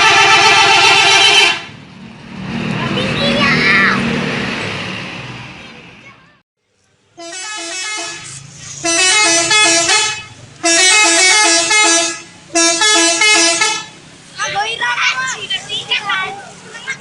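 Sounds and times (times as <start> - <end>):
musical bus horn jingle: 0.0 - 1.8, 7.2 - 14.0.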